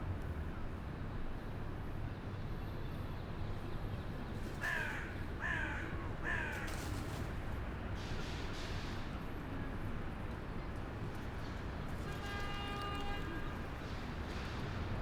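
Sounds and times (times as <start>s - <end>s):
crow cawing: 4.6s - 6.6s.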